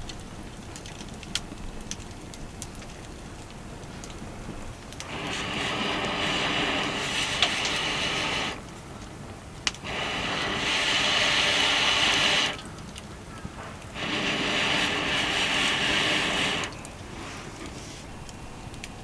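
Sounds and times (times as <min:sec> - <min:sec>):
hissing rushing noise: 0:05.0 - 0:08.7, 0:09.8 - 0:12.6, 0:13.9 - 0:16.9.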